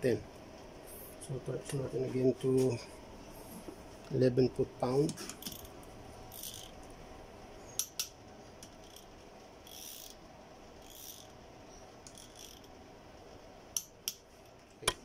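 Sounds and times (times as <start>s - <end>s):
wrench rasps: 6.3s - 6.7s, 8.8s - 10.2s, 10.8s - 11.3s, 12.1s - 12.7s.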